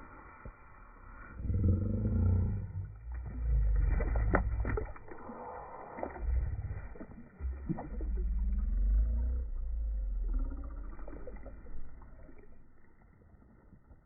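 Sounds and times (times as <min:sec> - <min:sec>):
low uneven rumbling: 0:00.0 - 0:14.0.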